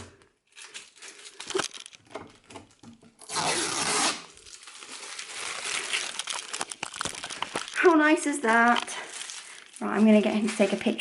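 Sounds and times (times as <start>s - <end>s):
plastic film crackling and peeling: 0.0s - 11.0s
plastic film tearing peel: 0.5s - 2.1s, 3.2s - 11.0s.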